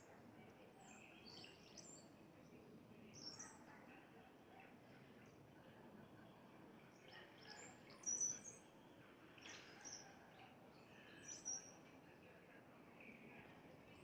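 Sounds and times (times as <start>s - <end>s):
small birds chirping: 0.8s - 2.6s, 10.7s - 11.8s.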